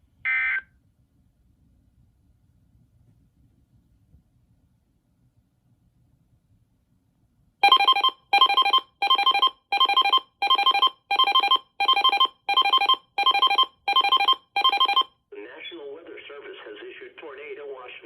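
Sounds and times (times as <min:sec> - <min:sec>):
scanner radio alarm trilling: 0:07.6 - 0:15.1.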